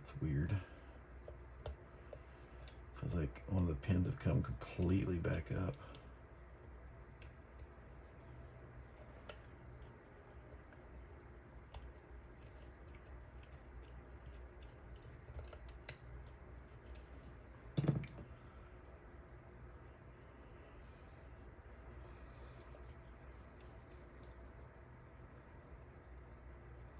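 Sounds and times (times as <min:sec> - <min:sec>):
lock picks clicking against pins: 0:11.7 - 0:18.2.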